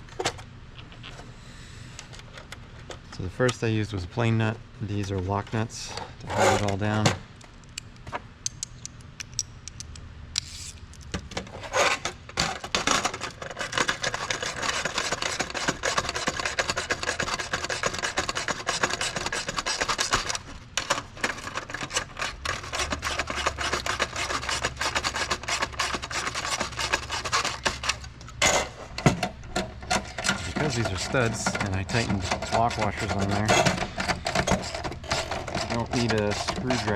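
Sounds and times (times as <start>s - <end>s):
hand tool rapid clicking and rasping: 13.4s - 28.1s, 29.9s - 36.9s.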